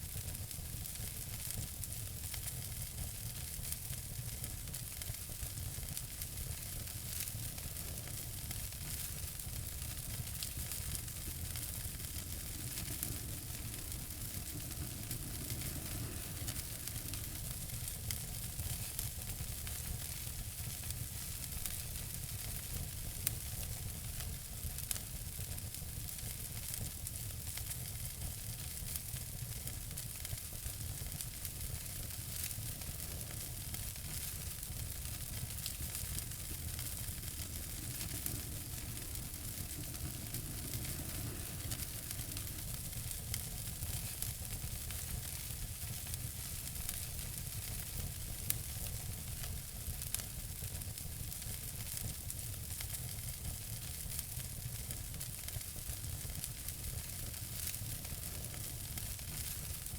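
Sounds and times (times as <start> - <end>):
steady hiss: 0.0 - 59.9
wood fire crackling: 0.0 - 59.9
low rumble: 10.2 - 18.9, 34.1 - 44.4.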